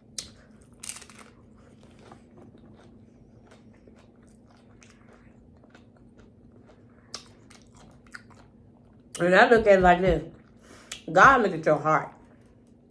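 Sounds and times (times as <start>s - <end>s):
chewing mouth clicks: 1.7s - 8.5s.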